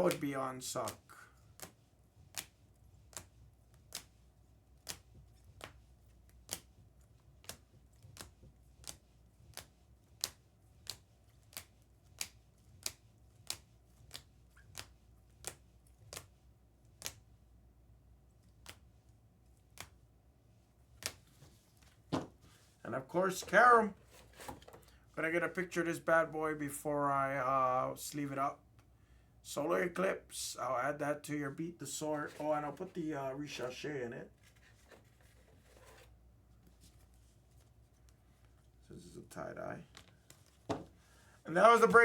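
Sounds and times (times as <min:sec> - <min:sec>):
cards flipping snap: 0:00.9 - 0:04.1, 0:04.8 - 0:06.7, 0:07.4 - 0:16.3, 0:18.5 - 0:18.9, 0:19.6 - 0:20.0, 0:21.0 - 0:21.3.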